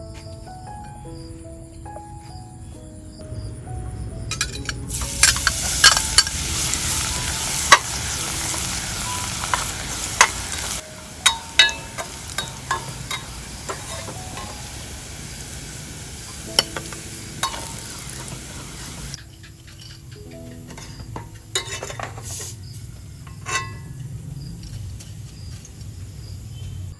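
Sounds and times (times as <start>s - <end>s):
metal utensil scraping a pan: 4.3s - 14.6s, 16.5s - 24.1s
food sizzling in a pan: 4.9s - 19.2s.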